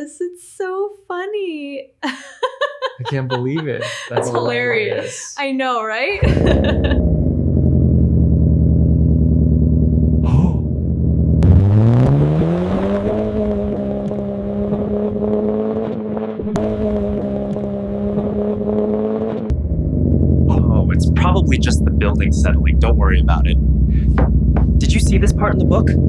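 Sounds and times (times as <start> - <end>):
car engine idling and revving: 6.2 - 26.0.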